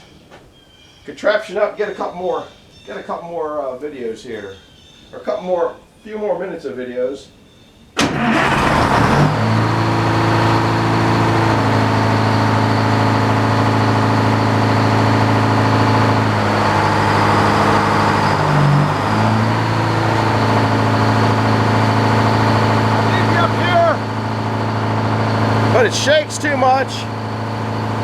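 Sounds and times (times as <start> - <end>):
engine running steadily: 8.0 - 28.0.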